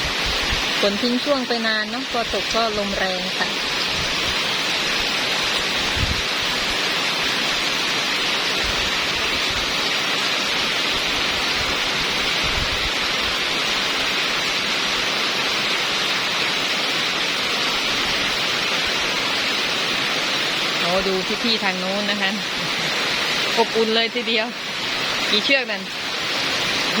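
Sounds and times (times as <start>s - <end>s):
wind buffeting microphone: 0.0s - 0.9s, 2.1s - 6.8s, 11.0s - 13.4s
heavy rain pouring: 0.0s - 27.0s.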